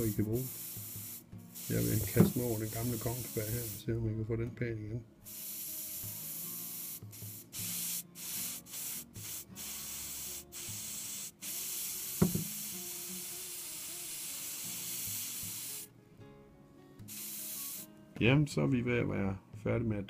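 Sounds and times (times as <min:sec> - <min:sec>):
steam hissing: 0:00.0 - 0:03.8, 0:05.3 - 0:15.9, 0:17.1 - 0:17.9
knock: 0:12.2 - 0:12.5.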